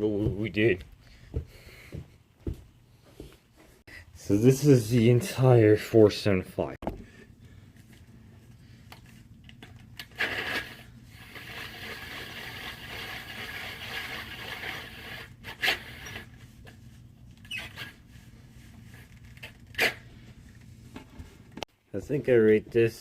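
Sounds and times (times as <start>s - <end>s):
tape measure scraping: 10.0s - 16.4s.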